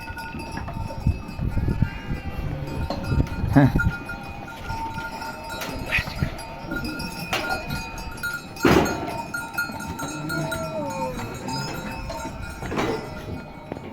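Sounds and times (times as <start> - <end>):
sheep bells clinking: 0.0 - 13.9
animal call: 9.7 - 13.1.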